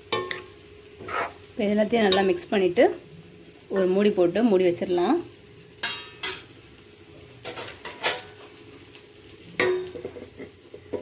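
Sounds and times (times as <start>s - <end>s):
metal spoon scraping a pan: 0.1s - 1.5s, 5.8s - 6.5s, 7.4s - 8.6s.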